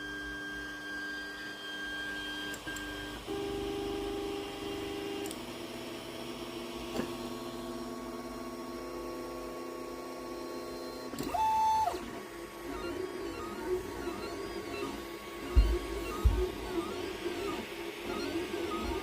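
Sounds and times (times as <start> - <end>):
three d printer stepper motors: 10.3 - 19.0.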